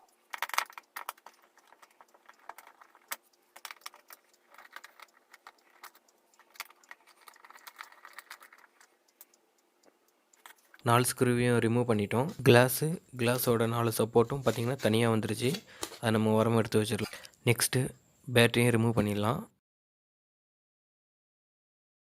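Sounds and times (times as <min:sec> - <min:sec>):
faint scraping and rattling: 0:00.0 - 0:09.4, 0:12.2 - 0:17.4
small screws being unscrewed: 0:00.3 - 0:09.4, 0:10.4 - 0:10.8.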